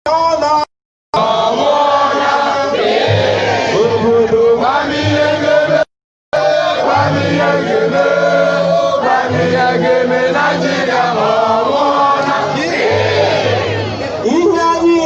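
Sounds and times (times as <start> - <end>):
group of people chanting: 1.2 - 13.9.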